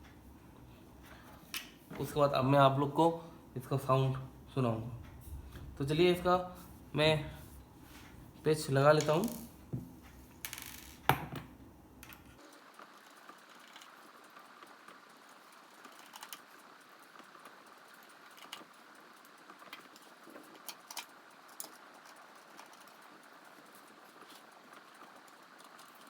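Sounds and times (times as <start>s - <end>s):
low hiss: 0.0s - 20.2s.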